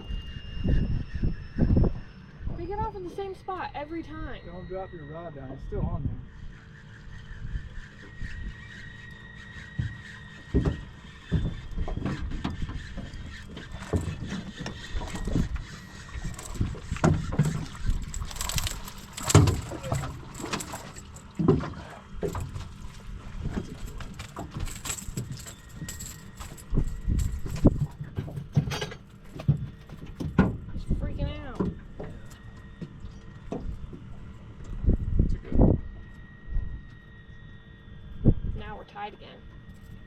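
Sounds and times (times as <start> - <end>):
knocks and clatter on boat: 9.7 - 30.8.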